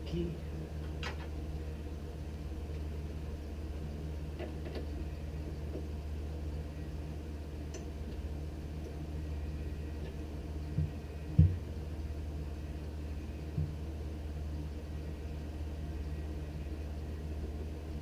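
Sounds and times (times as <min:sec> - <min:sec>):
low hum: 0:00.0 - 0:18.0
dull low thumps: 0:10.7 - 0:11.8.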